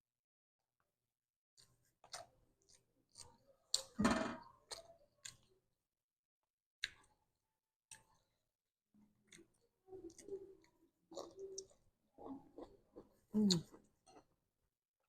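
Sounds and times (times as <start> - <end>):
person chewing: 1.6 - 4.0, 4.6 - 5.6, 7.9 - 8.4, 9.2 - 14.4.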